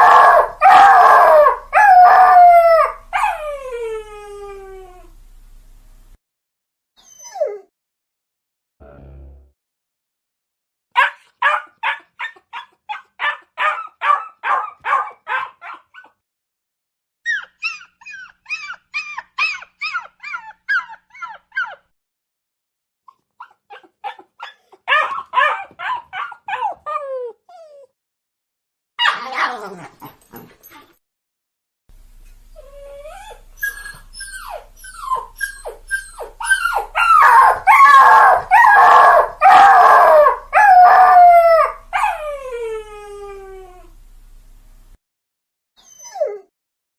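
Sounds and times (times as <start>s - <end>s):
puppy whimpering and whining: 7.0s - 7.7s, 17.3s - 21.8s, 23.1s - 28.0s, 32.5s - 43.9s, 45.8s - 46.5s.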